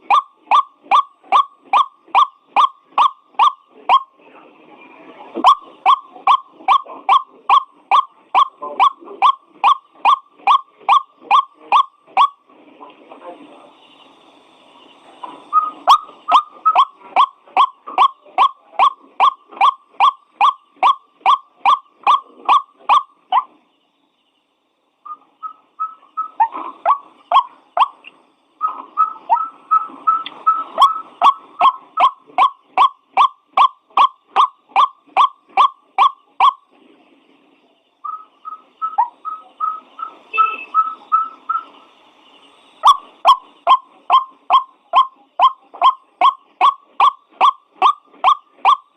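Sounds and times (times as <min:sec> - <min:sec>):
waterhen calling: 0:00.0 - 0:04.1, 0:05.4 - 0:12.4, 0:15.5 - 0:23.5, 0:25.1 - 0:28.0, 0:28.6 - 0:36.6, 0:42.8 - 0:48.9.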